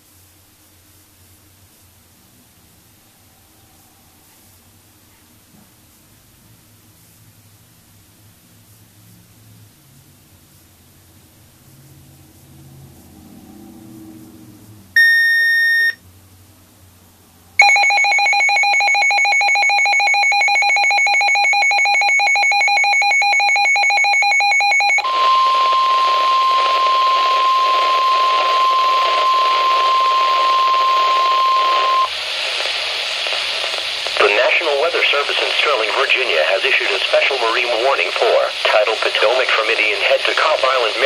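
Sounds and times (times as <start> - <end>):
short electronic beep: 15.0 - 16.0
steady warning alarm tone: 15.0 - 16.0, 17.6 - 32.1
buzzy digital data tones: 25.0 - 32.1
radio hiss: 25.0 - 41.0.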